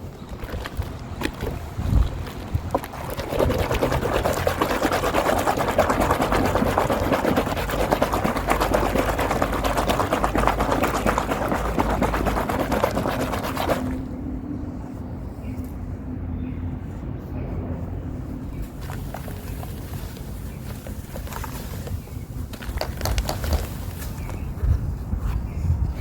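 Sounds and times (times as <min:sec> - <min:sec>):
block crumbling in foamy water: 0:00.1 - 0:14.1.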